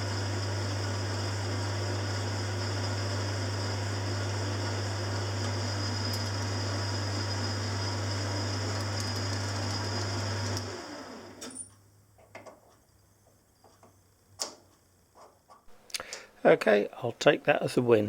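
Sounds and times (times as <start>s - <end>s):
lathe running and running down: 0.0s - 11.6s.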